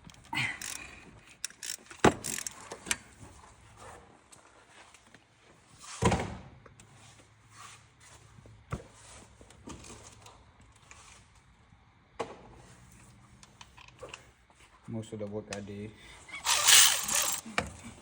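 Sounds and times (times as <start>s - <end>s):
small clicks of tools: 0.0s - 3.0s.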